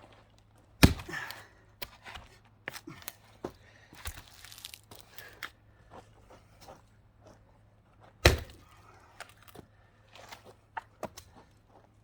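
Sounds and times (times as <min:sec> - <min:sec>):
wood cracking and tearing: 0:04.1 - 0:04.9.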